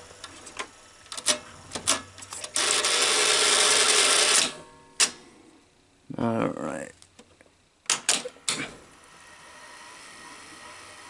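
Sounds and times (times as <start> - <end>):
motor and gears running: 0.0 - 4.6, 8.5 - 11.0
tape machine clicks: 0.2 - 5.2, 7.8 - 8.6.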